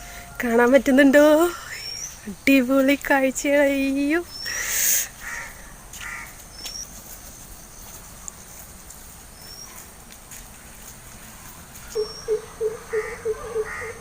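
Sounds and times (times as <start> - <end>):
high bird chirp: 1.6 - 2.3, 11.8 - 14.0
harsh bird calls: 11.8 - 14.0.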